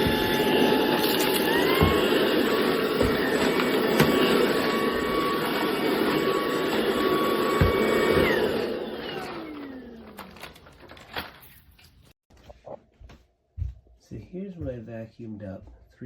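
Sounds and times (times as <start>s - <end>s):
vacuum cleaner motor whine: 0.0s - 11.2s.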